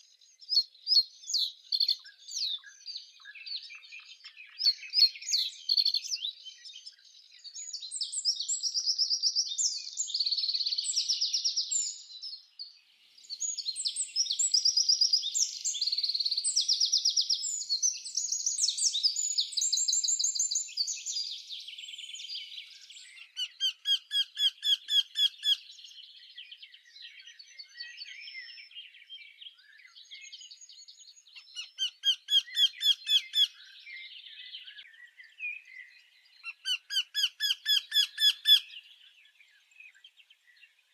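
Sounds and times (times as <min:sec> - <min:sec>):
small birds twittering: 0:00.0 - 0:40.9
bird trills: 0:22.7 - 0:25.7, 0:31.3 - 0:34.0, 0:36.4 - 0:38.9.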